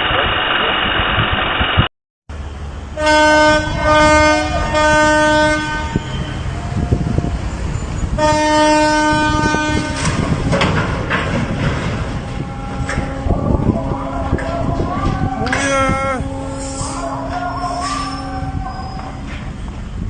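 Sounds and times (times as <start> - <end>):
engine rumbling: 2.3 - 20.0
horn blasts: 3.0 - 10.3.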